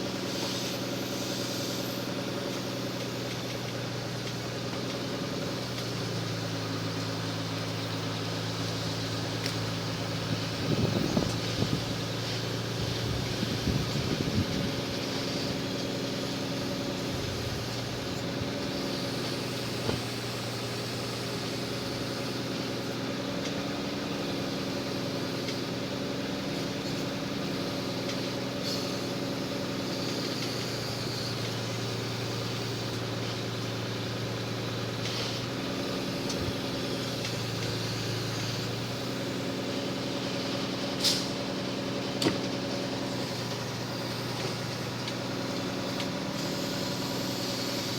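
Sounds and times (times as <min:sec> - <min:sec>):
loader engine running: 0:00.0 - 0:47.9.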